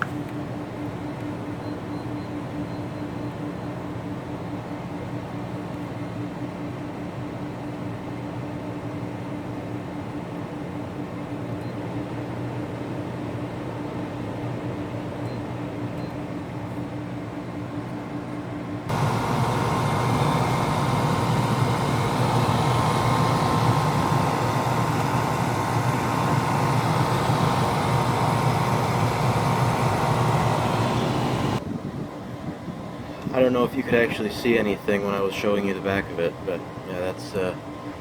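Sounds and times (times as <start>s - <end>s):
air conditioner running: 0.0s - 38.0s
faint high whine: 18.9s - 31.6s.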